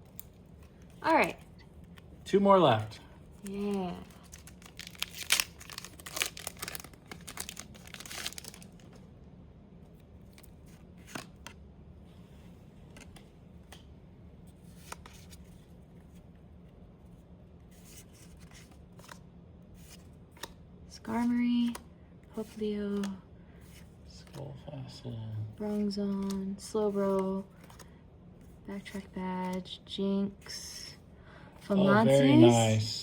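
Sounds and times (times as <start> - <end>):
foil wrapper tearing and crinkling: 3.6 - 8.9
cards rustling and tapping: 10.3 - 11.6, 19.8 - 24.4, 25.7 - 27.9.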